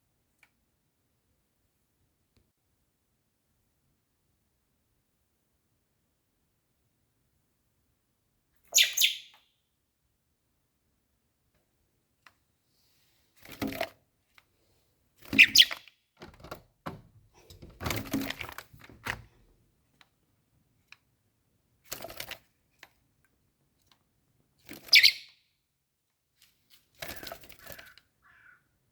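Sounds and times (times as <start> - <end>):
young bird calling: 8.7 - 9.4, 15.4 - 15.9, 24.9 - 25.3.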